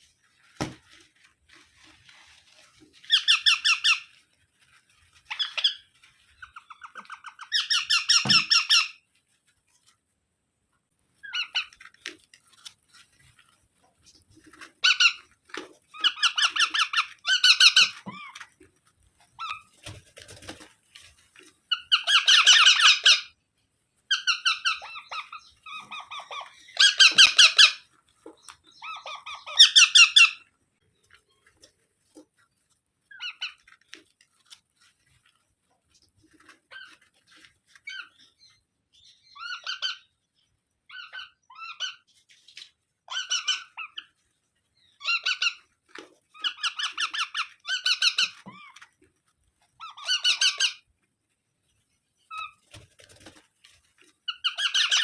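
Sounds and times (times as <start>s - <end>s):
parrots squawking: 3.0s - 4.1s, 5.2s - 5.8s, 6.4s - 9.0s, 11.2s - 11.8s, 14.8s - 15.2s, 15.9s - 18.4s, 21.7s - 23.3s, 24.1s - 27.8s, 28.7s - 30.4s, 39.2s - 40.1s, 40.9s - 42.1s, 43.1s - 44.1s, 45.0s - 45.6s, 46.3s - 48.8s, 49.8s - 50.8s, 54.3s - 55.0s.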